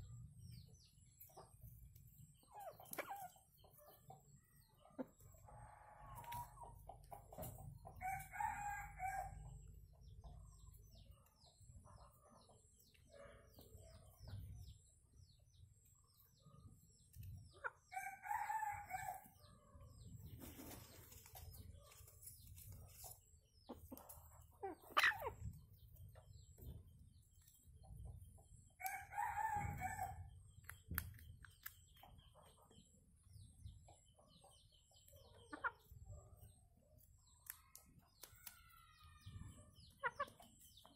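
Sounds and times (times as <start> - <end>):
rooster crowing: 8.0 - 9.4.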